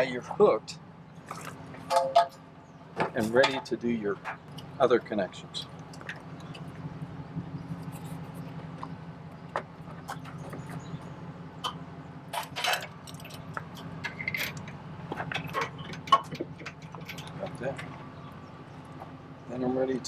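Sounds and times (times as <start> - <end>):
steady low hum: 0.0 - 20.0
metal hardware clinking: 1.3 - 2.4, 3.0 - 4.7, 11.6 - 18.0.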